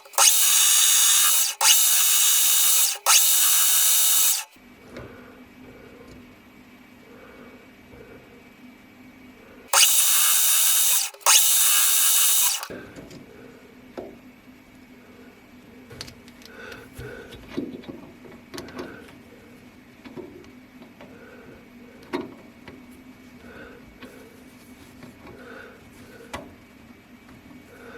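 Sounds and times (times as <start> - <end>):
metal lathe running: 0.0 - 4.5, 9.7 - 12.7.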